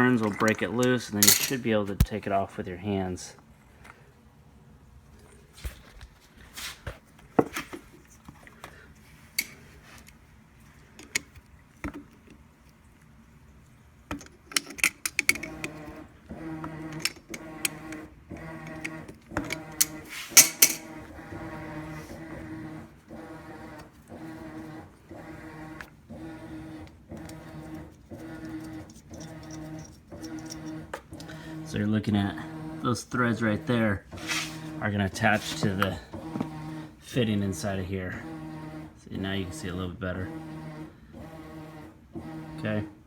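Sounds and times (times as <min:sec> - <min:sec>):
steady hum: 0:15.0 - 0:38.2.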